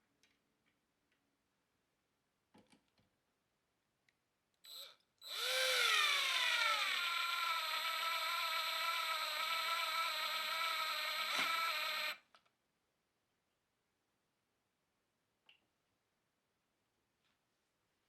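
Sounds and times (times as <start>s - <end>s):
cordless drill whining: 4.7s - 12.2s.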